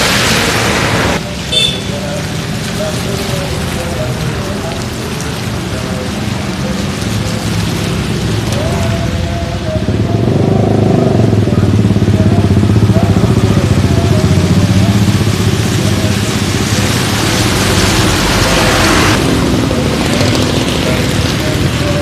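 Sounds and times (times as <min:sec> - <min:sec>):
large bus engine running: 0:11.0 - 0:22.0.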